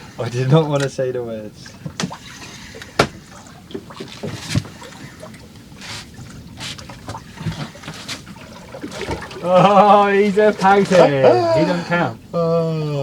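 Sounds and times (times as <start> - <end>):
water splashing against boat hull: 0.0 - 12.0.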